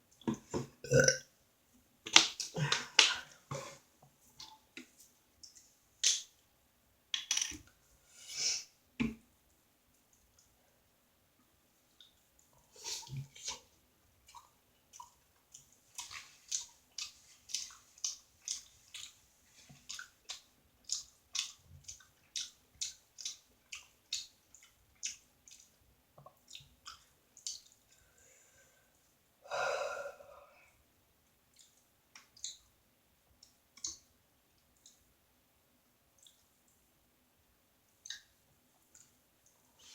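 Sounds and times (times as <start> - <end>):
chewing and lip-smacking: 14.2 - 19.2, 19.8 - 27.8, 31.5 - 32.6, 36.2 - 36.5.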